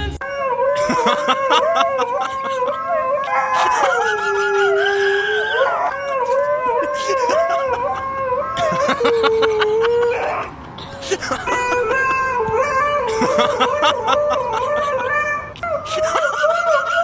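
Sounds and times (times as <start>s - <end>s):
dog howling: 0.4s - 9.2s.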